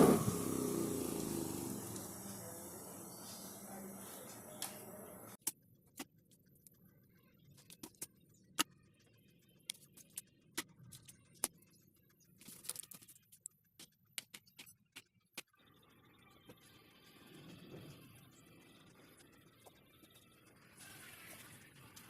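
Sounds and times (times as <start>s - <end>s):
background hiss: 0.0s - 5.4s.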